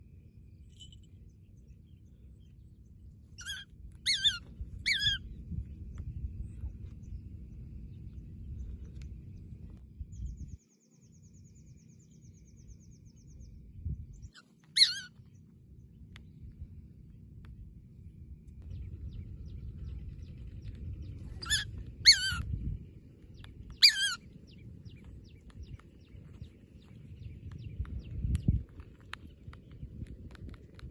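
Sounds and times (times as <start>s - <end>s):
low rumble of background noise: 0.0s - 30.9s
small bird calling: 3.3s - 7.2s, 14.2s - 15.5s, 18.7s - 29.8s.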